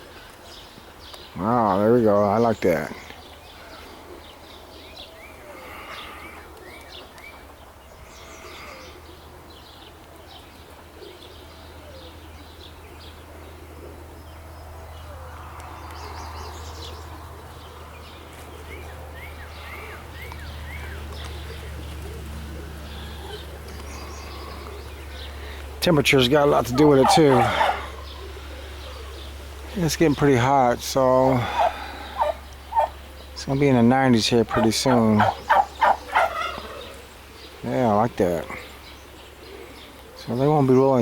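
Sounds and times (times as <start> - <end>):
small birds chirping: 0.0 - 41.0
low outdoor rumble: 9.0 - 41.0.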